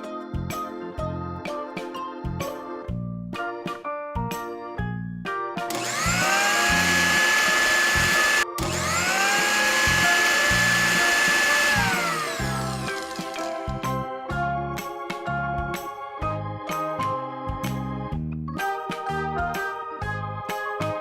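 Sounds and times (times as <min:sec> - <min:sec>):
children's music: 0:00.0 - 0:21.0
small electric motor whine: 0:05.7 - 0:13.4.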